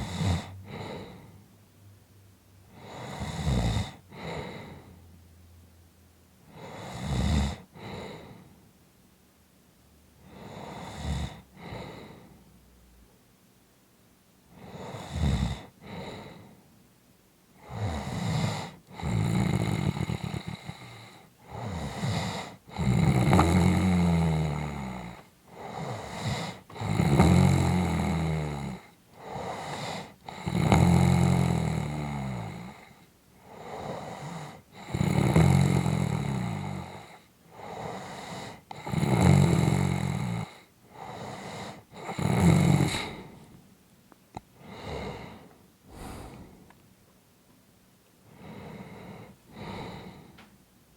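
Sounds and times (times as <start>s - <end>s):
person snoring: 0.0s - 1.4s, 2.7s - 5.0s, 6.5s - 8.4s, 14.6s - 16.5s, 17.6s - 43.4s, 44.6s - 46.7s, 48.4s - 50.4s
quiet breaths: 0.0s - 1.6s, 2.6s - 5.7s, 6.4s - 8.9s, 10.1s - 13.3s, 14.4s - 47.0s, 48.0s - 50.7s.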